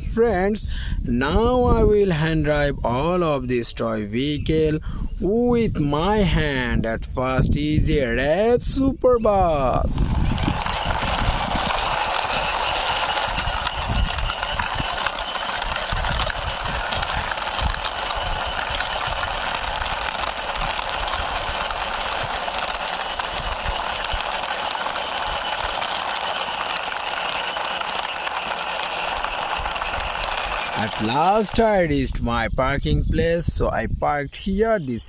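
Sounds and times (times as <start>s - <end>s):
toy bus wheels rolling: 9.9s - 32.3s.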